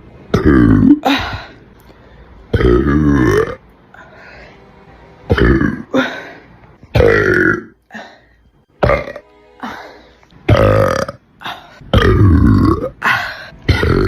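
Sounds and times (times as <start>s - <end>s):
woman belching: 0.3s - 1.1s, 2.5s - 3.6s, 5.3s - 6.0s, 7.0s - 7.8s, 8.8s - 9.2s, 10.5s - 11.2s, 11.9s - 14.0s.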